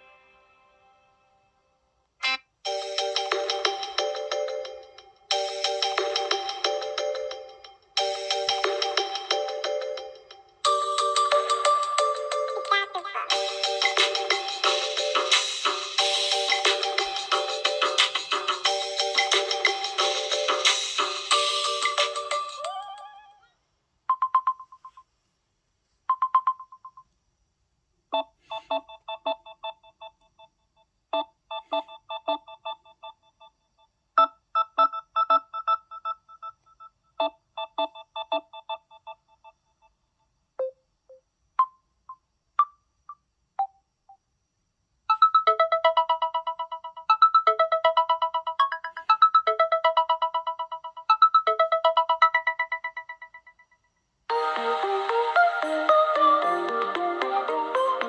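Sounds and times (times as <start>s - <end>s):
electronic ringtone melodies: 2.2s - 23.4s, 31.2s - 33.6s, 37.2s - 39.5s, 45.1s - 53.6s, 54.3s - 58.0s.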